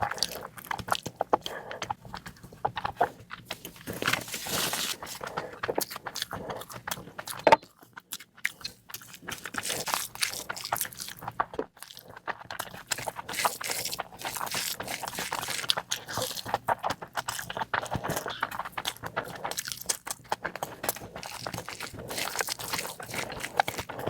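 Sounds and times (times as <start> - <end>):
person chewing food: 0.0 - 24.0.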